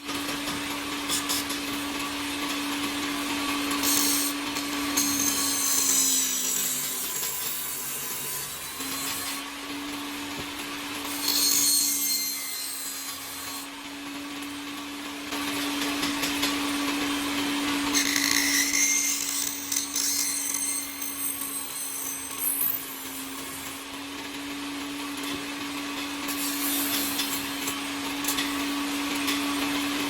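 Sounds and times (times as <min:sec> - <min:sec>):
power tool motor humming: 0:00.1 - 0:13.7, 0:17.8 - 0:24.6, 0:26.2 - 0:30.0
high-pitched whining rasp: 0:01.0 - 0:09.5, 0:11.0 - 0:13.7, 0:17.9 - 0:23.9, 0:26.3 - 0:29.4.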